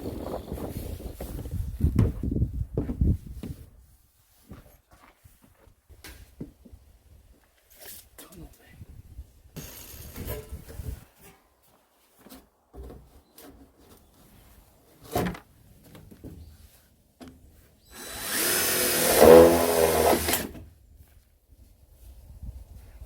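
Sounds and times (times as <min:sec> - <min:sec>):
power drill running: 0:09.6 - 0:10.2, 0:17.9 - 0:20.6.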